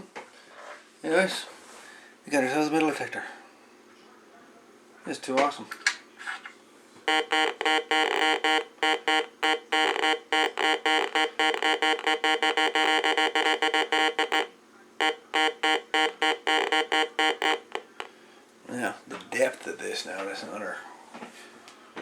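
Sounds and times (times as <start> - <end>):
metal detector beeping tone: 7.1 - 18.1.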